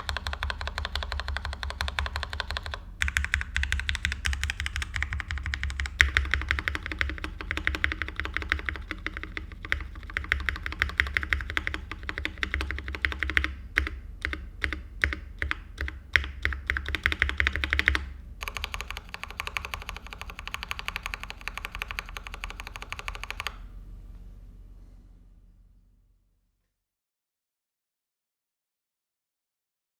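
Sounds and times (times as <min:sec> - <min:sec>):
mechanical keyboard typing: 0:00.0 - 0:23.6.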